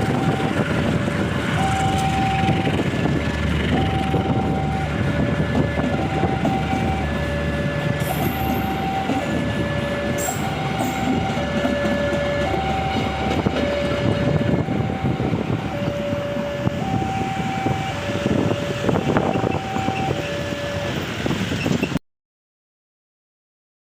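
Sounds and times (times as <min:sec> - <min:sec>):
two-tone warning alarm: 0:00.0 - 0:21.4
train wheels clattering over rails: 0:00.1 - 0:16.8.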